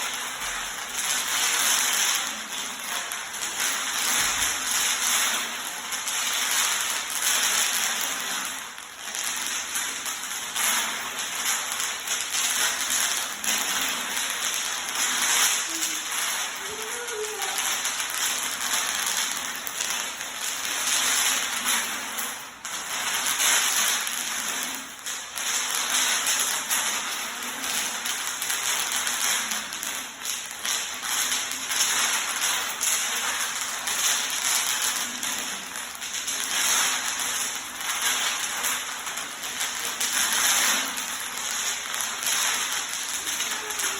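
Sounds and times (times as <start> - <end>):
bubble wrap popping: 15.0 - 17.6, 42.2 - 43.9.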